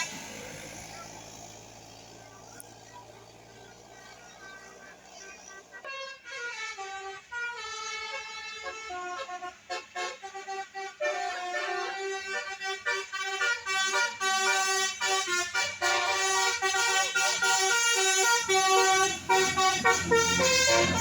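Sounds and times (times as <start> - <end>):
bus horn playing a tune: 0.0 - 21.0.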